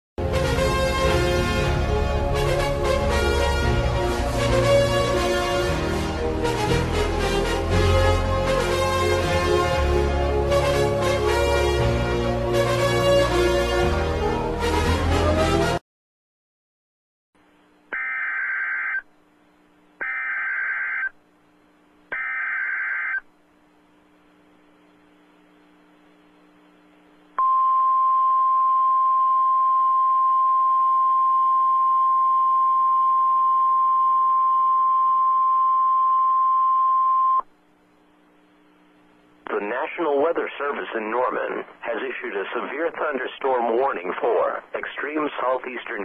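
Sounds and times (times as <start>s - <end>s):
buzzy data bursts: 17.9s - 19.0s, 20.0s - 21.1s, 22.1s - 23.2s.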